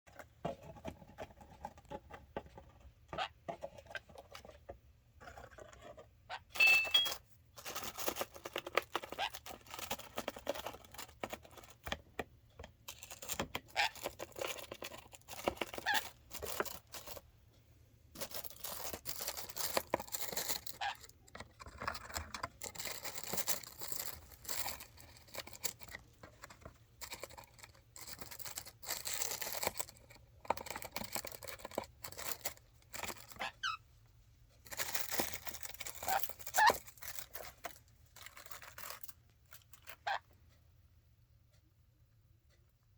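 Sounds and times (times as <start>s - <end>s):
bag rustling and crinkling: 18.2s - 21.0s, 21.6s - 26.0s.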